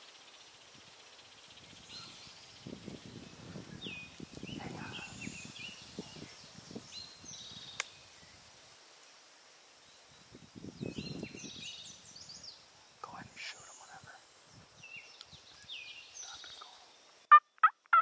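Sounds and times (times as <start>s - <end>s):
songbirds trilling: 0.0s - 8.5s, 9.8s - 18.0s.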